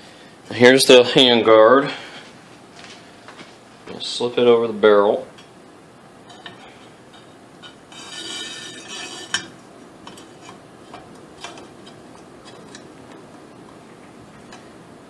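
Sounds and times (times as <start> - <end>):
handguard scraping slide: 7.9 - 9.5
parts clicking and tapping: 9.3 - 14.7.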